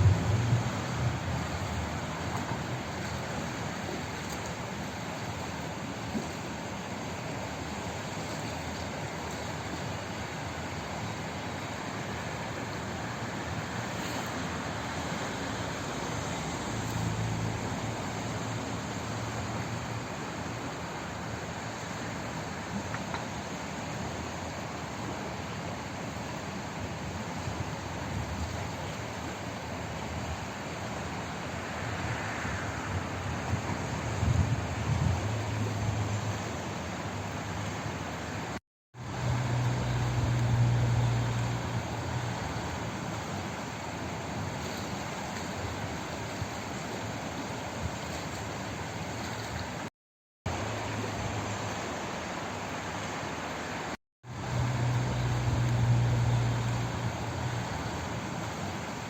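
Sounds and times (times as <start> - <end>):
low hum: 0.0 - 2.4
low rumble: 0.0 - 2.4
water rushing: 0.0 - 49.9, 50.5 - 59.0.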